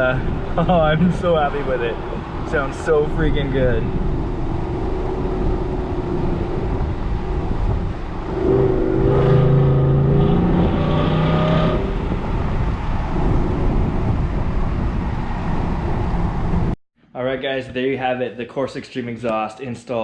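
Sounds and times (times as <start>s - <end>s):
truck engine rumbling while driving: 0.0s - 16.8s.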